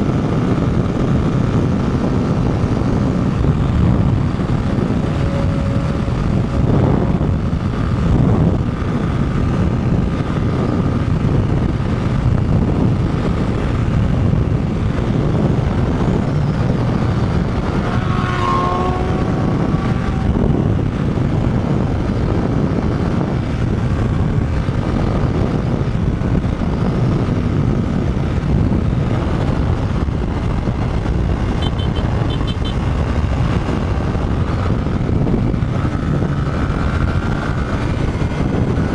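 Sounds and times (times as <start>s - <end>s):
motorcycle engine drone: 0.0s - 38.9s
wind rumble on microphone: 0.0s - 38.9s
brief high-pitched tone: 4.7s - 6.6s.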